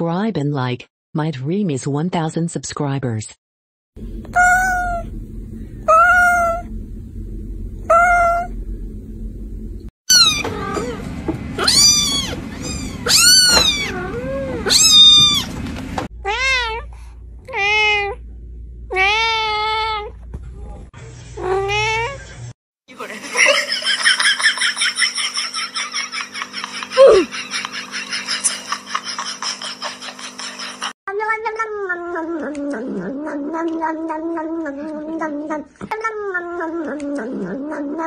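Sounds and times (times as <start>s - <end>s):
cats meowing: 4.3s - 5.1s, 5.9s - 6.7s, 7.9s - 8.5s, 10.1s - 11.0s, 11.6s - 15.5s.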